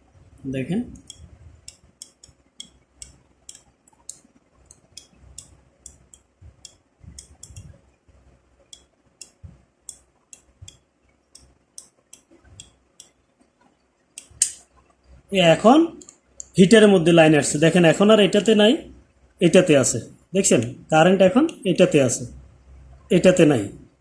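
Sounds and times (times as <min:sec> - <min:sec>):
timer gears clicking: 0:01.0 - 0:07.8.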